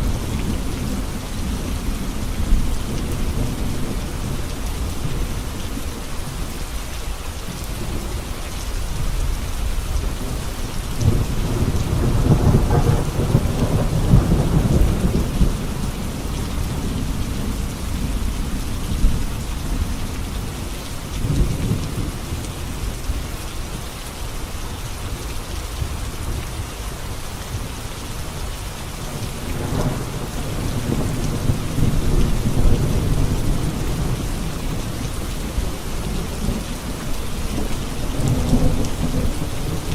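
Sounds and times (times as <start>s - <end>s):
heavy rain on a road: 0.0s - 39.9s
rolls of thunder: 11.1s - 15.7s.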